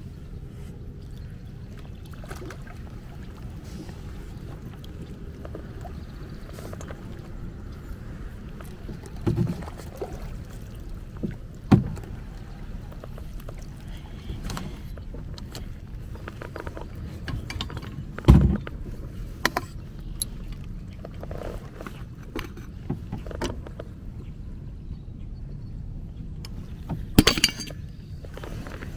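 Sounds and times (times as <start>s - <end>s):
low rumble of water: 0.0s - 28.9s
knocks and clicks against hull: 3.6s - 24.0s, 26.4s - 28.9s.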